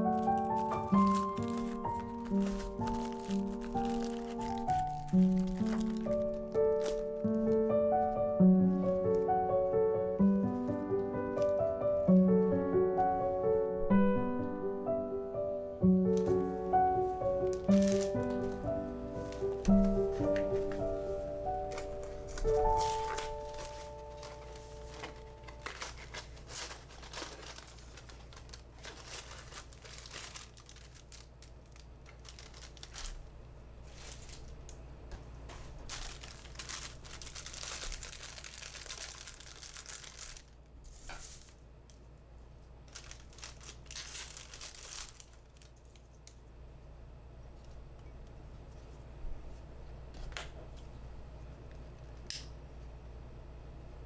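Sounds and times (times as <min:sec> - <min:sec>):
wrapping material crinkling: 0:00.0 - 0:09.5, 0:10.2 - 0:12.4, 0:16.1 - 0:34.8, 0:35.4 - 0:41.7, 0:42.8 - 0:46.4.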